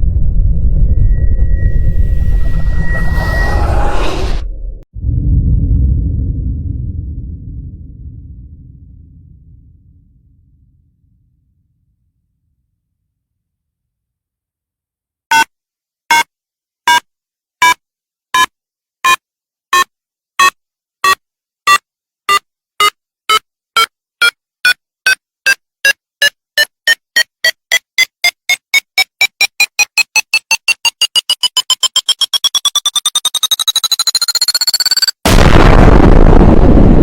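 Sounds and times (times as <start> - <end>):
electronic countdown beeps: 18.4 - 24.4, 25.1 - 35.2.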